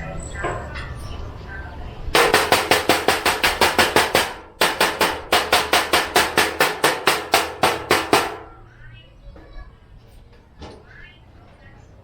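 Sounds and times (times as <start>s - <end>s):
rapid strokes on metal case: 2.2s - 8.4s.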